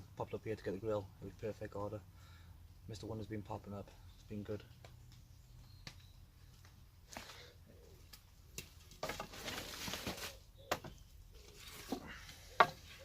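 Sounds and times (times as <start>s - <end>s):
sticks and camp gear knocking: 11.8s - 13.0s.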